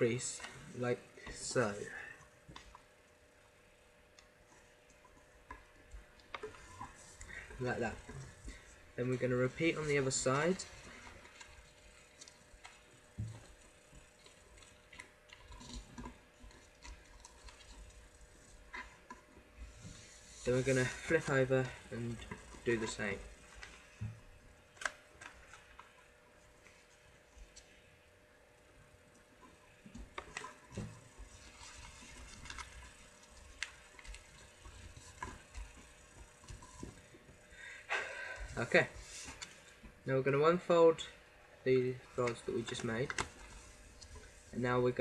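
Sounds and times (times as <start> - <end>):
paper crinkling: 9.4 - 24.0, 30.0 - 37.5, 42.2 - 44.6
paper crease clicks: 24.7 - 26.0, 29.8 - 37.1, 42.2 - 44.4
paper rustling and crinkling: 30.0 - 37.4, 42.2 - 44.6.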